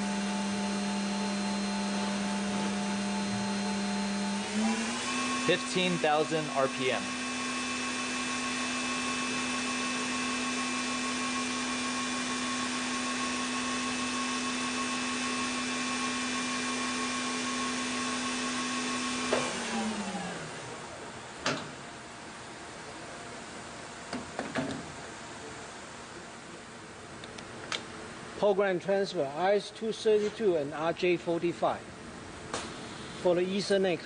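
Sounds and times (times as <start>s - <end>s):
machine spindle whine: 0.0s - 21.0s.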